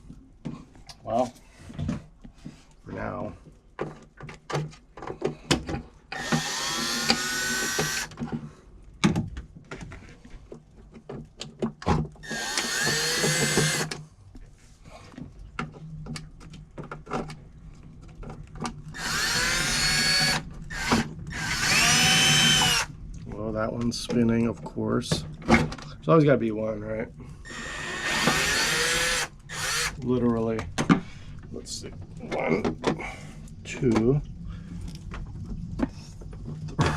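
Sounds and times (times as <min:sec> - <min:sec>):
cordless drill whining: 0:06.1 - 0:08.2, 0:12.2 - 0:14.0, 0:18.9 - 0:22.9, 0:27.4 - 0:30.0.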